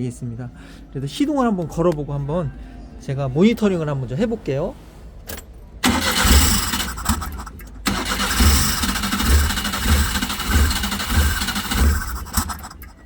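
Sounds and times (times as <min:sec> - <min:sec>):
engine running unevenly: 0:03.7 - 0:13.0
engine starter cranking: 0:05.2 - 0:13.0.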